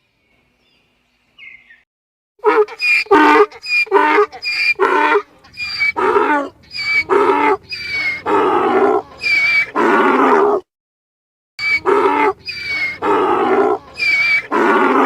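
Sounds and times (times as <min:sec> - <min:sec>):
donkey braying: 0:02.4 - 0:10.6, 0:11.6 - 0:15.0.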